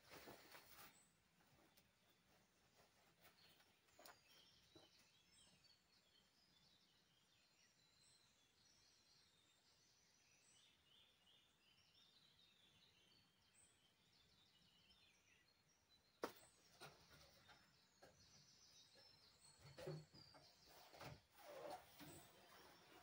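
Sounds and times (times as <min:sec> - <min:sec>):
knocks and rustles of handling: 0:00.0 - 0:05.5
songbirds chirping: 0:00.0 - 0:23.0.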